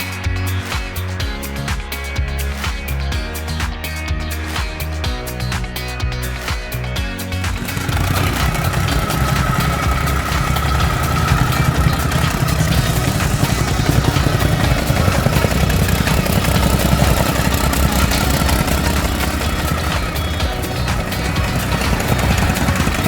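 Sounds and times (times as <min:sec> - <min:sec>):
soil compactor engine running: 0:07.4 - 0:23.0.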